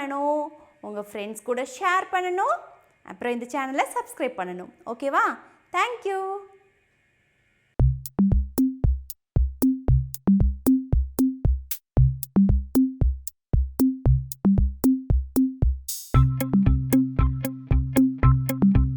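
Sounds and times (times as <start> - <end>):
electronic music with steady beat: 7.8 - 18.9.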